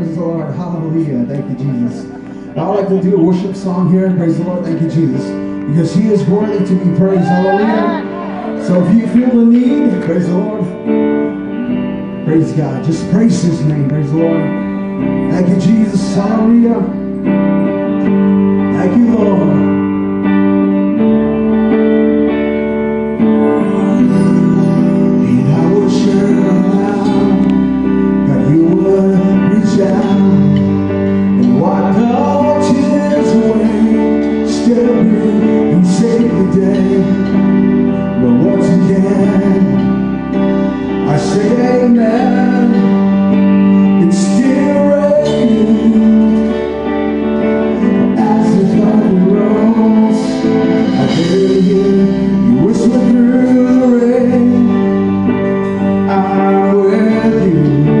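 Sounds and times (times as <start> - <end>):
bass line: 0.0 - 58.0
guitars playing: 0.0 - 58.0
person singing sliding vocals: 5.6 - 10.7, 23.5 - 37.5.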